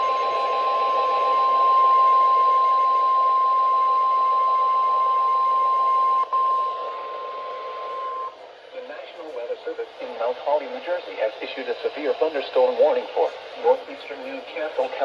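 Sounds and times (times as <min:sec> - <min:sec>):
high-pitched warning tone: 0:00.0 - 0:08.4.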